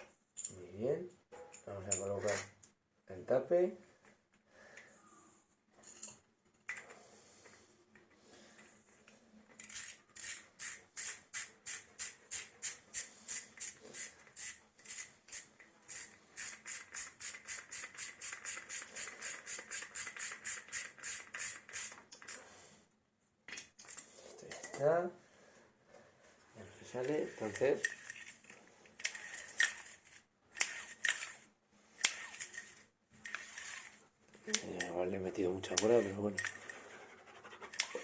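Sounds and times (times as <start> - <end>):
pull-starter rope scraping: 25.3 - 34.1.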